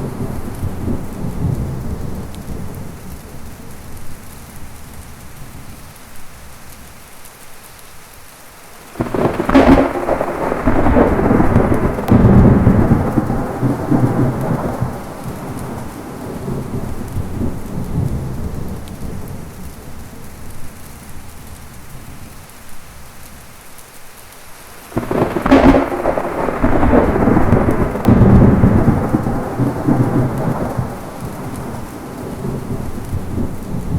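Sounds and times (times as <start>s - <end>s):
thunderclap: 0.0s - 3.4s, 9.0s - 20.5s, 24.8s - 33.9s
thunder rumbling: 0.0s - 6.7s, 8.9s - 23.5s, 24.8s - 33.9s
heavy rain: 0.0s - 33.9s.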